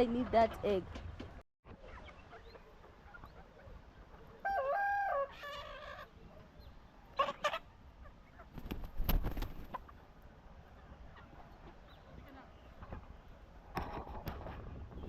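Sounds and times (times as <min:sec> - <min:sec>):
chicken drawn-out call: 0:01.7 - 0:08.5
chicken squawks: 0:01.8 - 0:06.1, 0:07.1 - 0:08.7.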